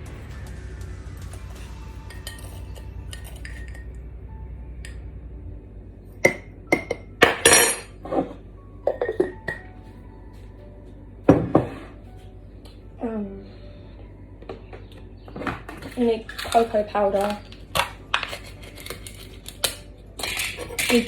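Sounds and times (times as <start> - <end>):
spoon clinking against a mug: 2.1 - 4.0, 16.3 - 21.0.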